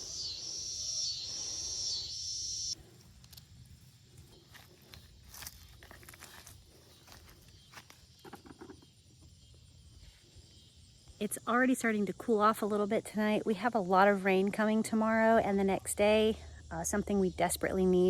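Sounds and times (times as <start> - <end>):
pulsing insect buzz: 0.0 - 2.8
rustling plants: 2.8 - 8.4
footsteps through plants: 3.7 - 8.1.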